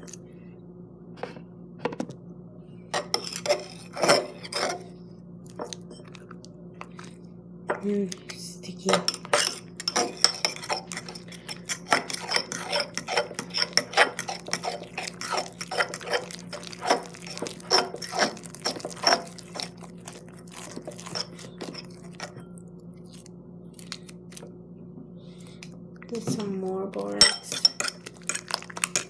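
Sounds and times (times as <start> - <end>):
spoon clinking against a bowl: 8.9 - 22.6, 27.1 - 29.0.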